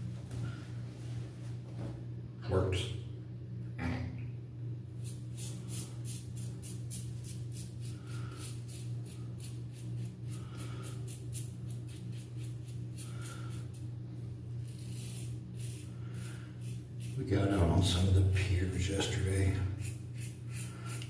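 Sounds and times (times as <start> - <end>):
steady low hum: 0.0 - 21.0
razor scraping stubble: 5.0 - 13.9, 14.5 - 21.0.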